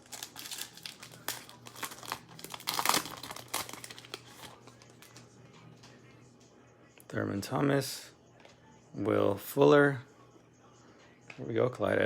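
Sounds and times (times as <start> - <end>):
wrapper crinkling and tearing: 0.0 - 5.2.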